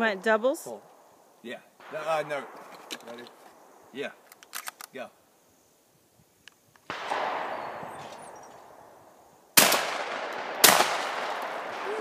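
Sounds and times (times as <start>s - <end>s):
shotgun shots: 1.8s - 3.7s, 6.9s - 11.9s.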